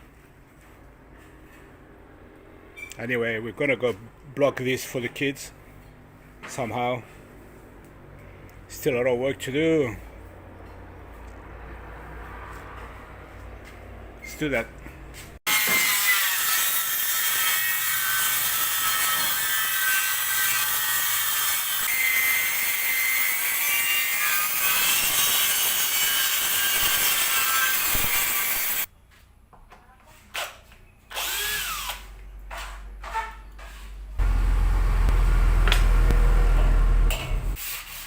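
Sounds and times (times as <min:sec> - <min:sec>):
power tool whining on wood: 0:31.2 - 0:32.0
loud low-pitched machine: 0:34.2 - 0:37.6.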